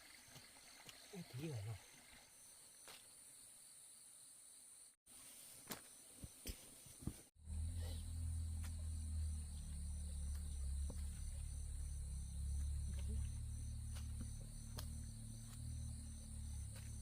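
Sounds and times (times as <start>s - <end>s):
crickets chirping: 0.0s - 5.0s, 7.4s - 17.0s
low rumble: 7.4s - 17.0s.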